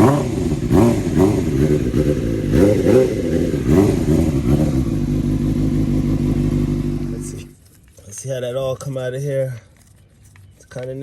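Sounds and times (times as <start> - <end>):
motorcycle engine revving and idling: 0.0 - 7.6.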